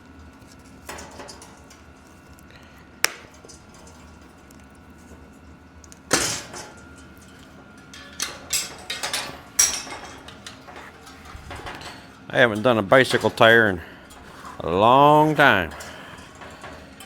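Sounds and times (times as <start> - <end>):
metal tools clanking and rattling: 6.1 - 17.0.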